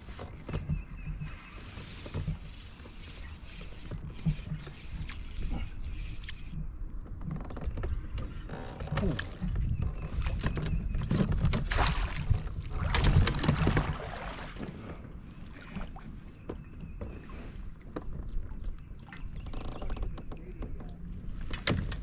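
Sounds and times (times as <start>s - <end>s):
knocks and clicks on a kayak: 0.0s - 2.5s, 6.6s - 14.0s, 14.6s - 22.0s
water lapping: 0.0s - 6.8s, 7.9s - 21.6s
wind rumble on microphone: 5.3s - 15.3s.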